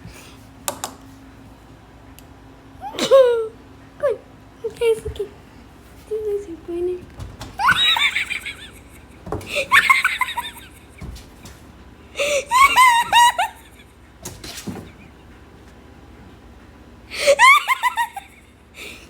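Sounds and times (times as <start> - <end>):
faint knocks: 7.0 - 8.3
wheezing high-pitched laughter: 17.2 - 18.4.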